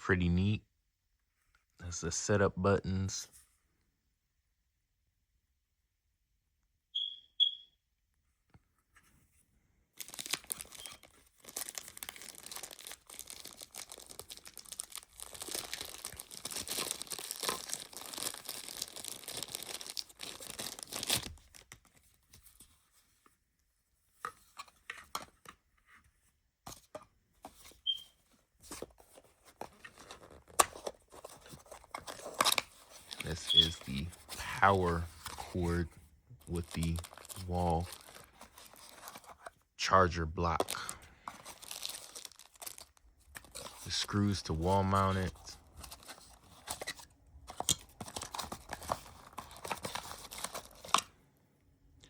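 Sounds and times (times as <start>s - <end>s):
short high chirps: 7.0s - 7.8s
rustles and clicks of handling: 8.2s - 9.6s, 21.2s - 39.7s
plastic packaging crinkling and tearing: 10.0s - 22.2s, 29.1s - 39.5s, 40.5s - 51.1s.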